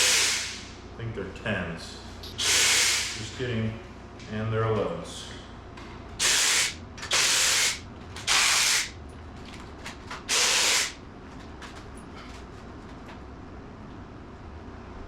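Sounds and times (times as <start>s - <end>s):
impact wrench bursts: 0.0s - 0.7s, 2.3s - 3.2s, 6.2s - 9.0s, 10.2s - 11.0s.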